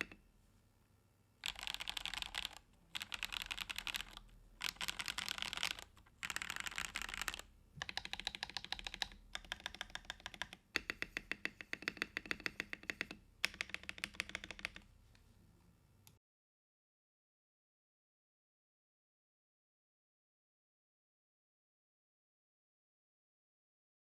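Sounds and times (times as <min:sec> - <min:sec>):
mechanical keyboard typing: 0:01.4 - 0:14.9.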